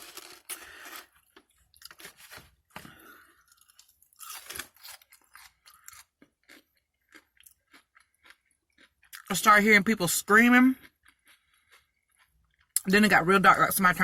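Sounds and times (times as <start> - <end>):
person chewing and crunching food: 0.0 - 14.0.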